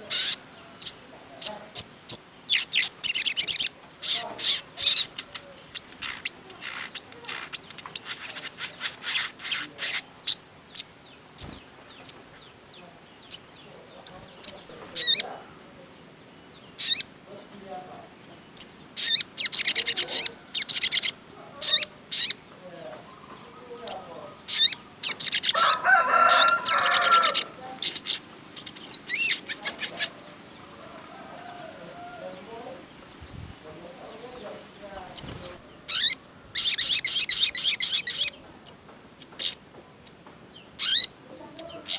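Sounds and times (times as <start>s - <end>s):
songbird chattering and chirping: 0.0s - 41.9s.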